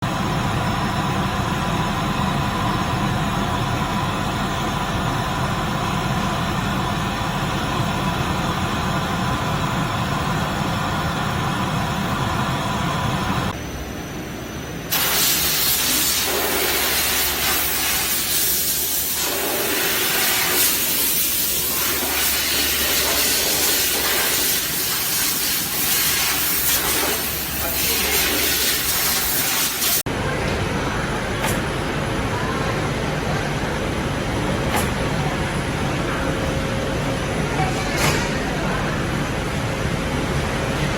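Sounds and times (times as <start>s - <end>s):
low machine hum: 0.0s - 15.0s, 30.0s - 40.9s
machinery hissing: 14.9s - 33.6s.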